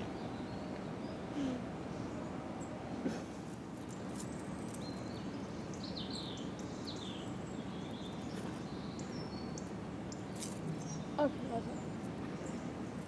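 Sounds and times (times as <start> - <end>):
outdoor background noise: 0.0 - 13.0
small birds chirping: 3.8 - 13.0.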